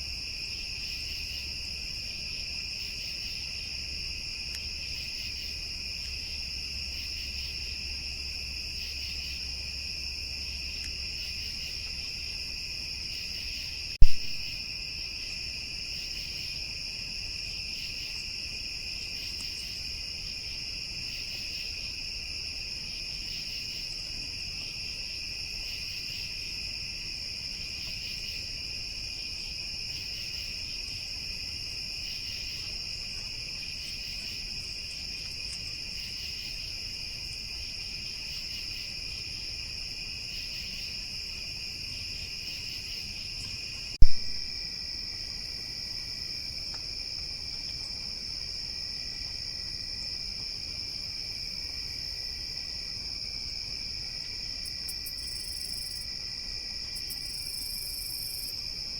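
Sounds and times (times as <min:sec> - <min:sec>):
crickets trilling: 0:00.0 - 0:58.9
sharp click: 0:14.0 - 0:14.3, 0:44.0 - 0:44.3.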